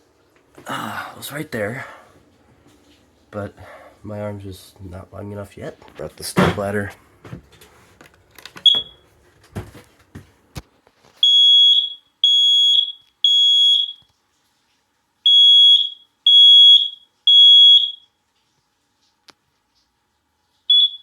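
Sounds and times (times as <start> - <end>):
smoke alarm beeping: 8.6 - 9.1, 11.2 - 14.1, 15.2 - 18.2, 20.7 - 21.0.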